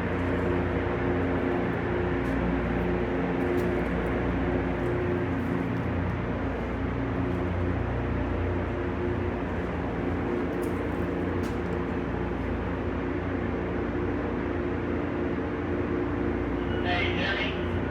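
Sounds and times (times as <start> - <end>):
machinery hum: 0.0 - 17.9.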